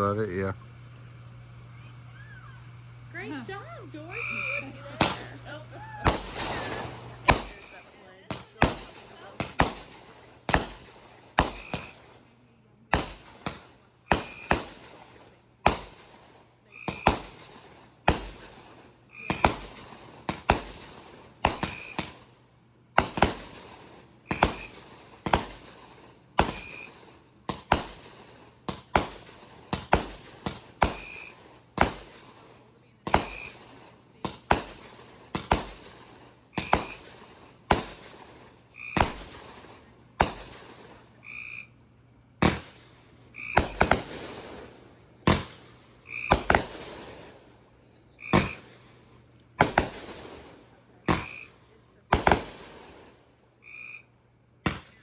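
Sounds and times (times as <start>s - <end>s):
fireworks bangs: 0.0s - 53.4s, 54.6s - 55.0s.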